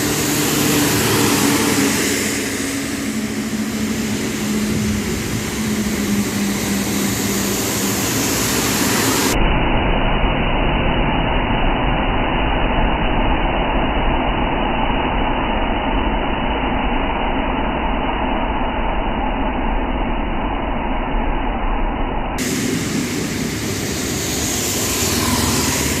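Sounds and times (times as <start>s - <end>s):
low rumble: 0.0s - 26.0s
steady rain hiss: 22.4s - 26.0s.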